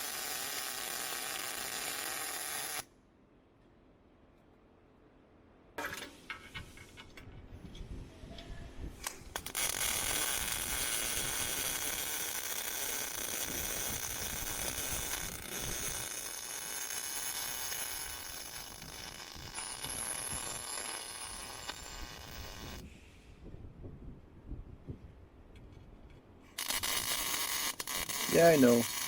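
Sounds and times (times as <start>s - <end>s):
welding arc crackling: 0.0s - 2.8s, 9.0s - 22.8s, 26.6s - 29.0s.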